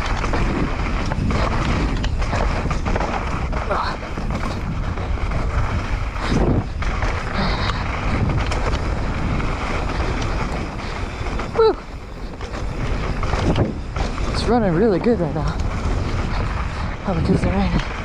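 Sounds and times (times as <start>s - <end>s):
bike rattling and knocking: 0.0s - 18.0s
bike tyres rolling on wet dirt: 0.0s - 18.0s
wind buffeting microphone: 0.0s - 18.0s.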